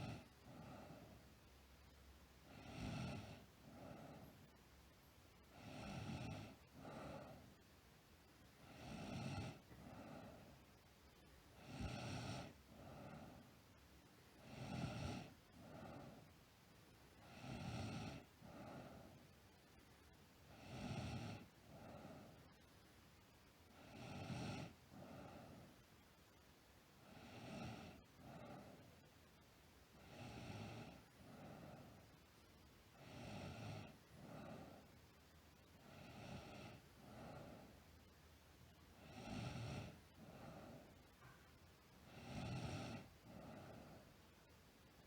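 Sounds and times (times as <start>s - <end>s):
girl snoring: 0.0s - 1.2s, 2.4s - 4.4s, 5.6s - 7.5s, 8.6s - 10.6s, 11.6s - 13.4s, 14.4s - 16.3s, 17.2s - 19.2s, 20.4s - 22.4s, 23.7s - 25.8s, 27.0s - 28.9s, 30.0s - 32.0s, 33.0s - 34.9s, 35.8s - 37.7s, 39.0s - 40.9s, 42.0s - 44.0s.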